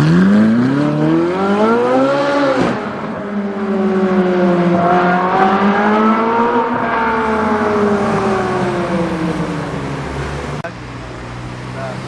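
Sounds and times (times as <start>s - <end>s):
sports car engine pulling away: 0.0s - 12.0s
engine running steadily: 8.0s - 12.0s.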